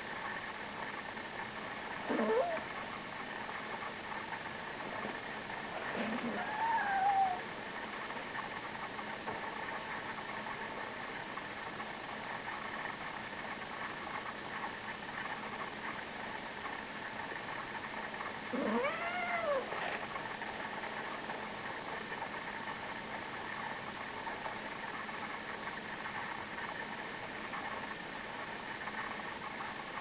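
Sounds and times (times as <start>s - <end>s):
steady low hum: 0.0s - 30.0s
cat meowing: 2.1s - 2.6s, 6.0s - 7.4s, 18.6s - 19.8s.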